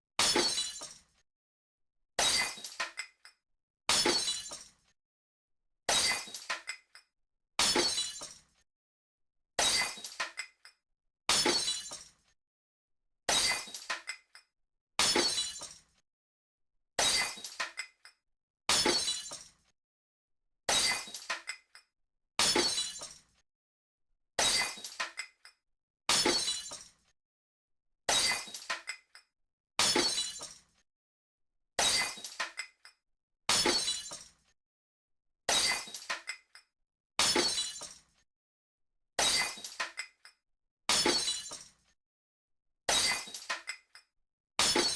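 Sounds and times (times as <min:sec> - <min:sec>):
glass shards scattering: 0:00.2 - 0:01.0, 0:03.9 - 0:04.7, 0:05.9 - 0:06.6, 0:07.6 - 0:08.4, 0:13.3 - 0:14.2, 0:15.0 - 0:15.8, 0:20.7 - 0:21.6, 0:28.1 - 0:29.0, 0:29.8 - 0:30.6, 0:31.8 - 0:32.7, 0:33.5 - 0:34.3, 0:35.5 - 0:36.4, 0:37.2 - 0:38.0, 0:39.2 - 0:40.1, 0:40.9 - 0:41.7, 0:42.9 - 0:44.0
glass smashing: 0:00.2 - 0:01.0, 0:02.2 - 0:02.8, 0:03.9 - 0:04.7, 0:05.9 - 0:06.5, 0:07.6 - 0:08.4, 0:11.3 - 0:12.1, 0:13.3 - 0:13.9, 0:15.0 - 0:15.8, 0:17.0 - 0:17.6, 0:20.7 - 0:21.3, 0:22.4 - 0:23.2, 0:24.4 - 0:25.0, 0:26.1 - 0:26.9, 0:28.1 - 0:28.7, 0:29.8 - 0:30.6, 0:31.8 - 0:32.4, 0:33.5 - 0:34.3, 0:35.5 - 0:36.2, 0:37.2 - 0:38.0, 0:39.2 - 0:40.0, 0:40.9 - 0:41.7, 0:42.9 - 0:43.8.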